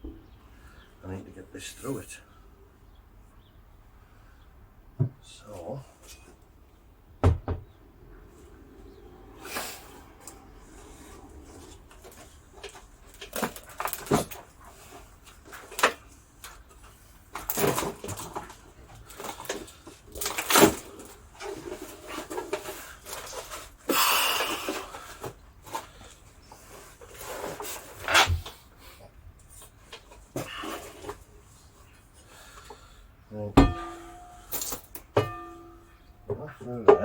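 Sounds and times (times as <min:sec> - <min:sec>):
metal knocks and clanks: 0:33.6 - 0:37.0.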